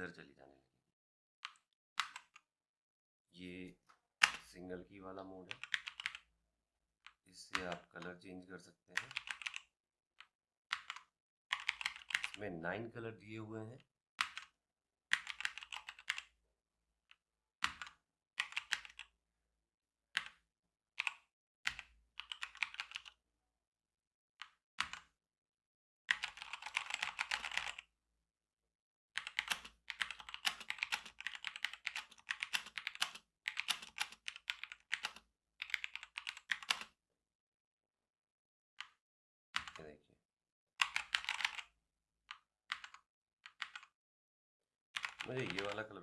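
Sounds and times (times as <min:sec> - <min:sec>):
mechanical keyboard typing: 0:04.2 - 0:04.4, 0:05.5 - 0:06.2, 0:07.5 - 0:07.9, 0:09.0 - 0:09.6, 0:10.7 - 0:12.4, 0:15.1 - 0:16.3, 0:17.6 - 0:19.1, 0:21.0 - 0:23.1, 0:24.8 - 0:25.1, 0:26.1 - 0:27.8, 0:29.2 - 0:36.9, 0:40.8 - 0:41.7, 0:42.7 - 0:43.9, 0:45.0 - 0:45.9.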